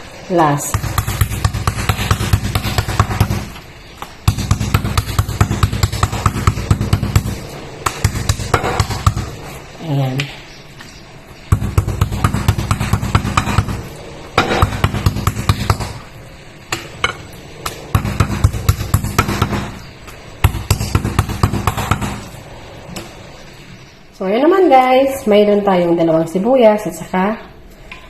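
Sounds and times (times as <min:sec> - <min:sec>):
meat being pounded with heavy thuds: 0:00.7 - 0:09.4, 0:11.5 - 0:16.1, 0:16.7 - 0:22.3.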